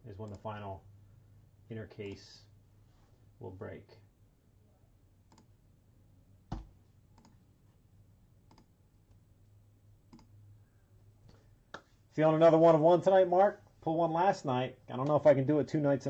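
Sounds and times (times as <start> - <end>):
computer mouse clicks: 5.3 - 5.5, 6.5 - 7.4, 8.5 - 9.2, 10.1 - 10.3.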